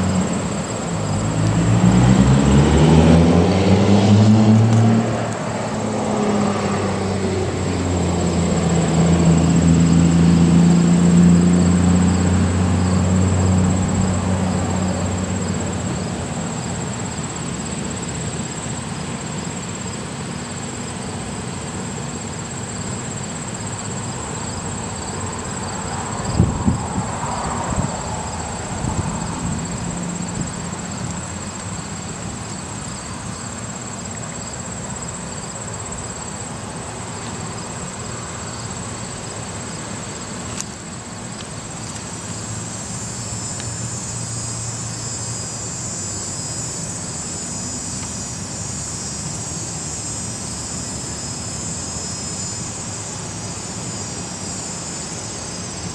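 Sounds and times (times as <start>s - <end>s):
high-pitched insect trill: 0.0s - 55.9s
wind buffeting microphone: 26.2s - 30.6s.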